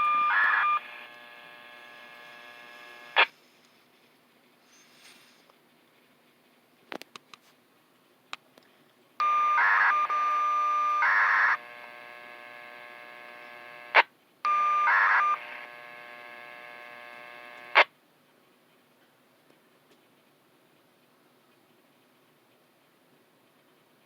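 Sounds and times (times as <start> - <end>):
buzzy data tones over radio: 0.0 - 3.4, 9.2 - 17.9
radio hiss: 0.0 - 3.8, 9.2 - 17.9.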